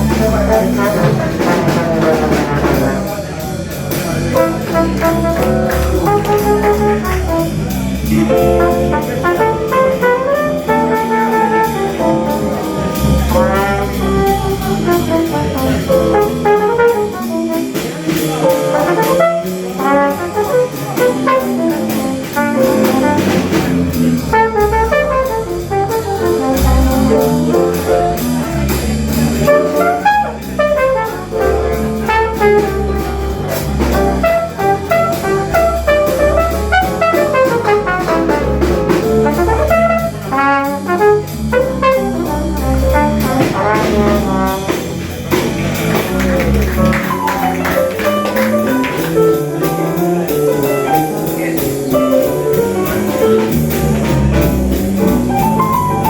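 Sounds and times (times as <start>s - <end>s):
bass guitar: 0.0s - 56.0s
swing jazz band: 0.0s - 56.0s.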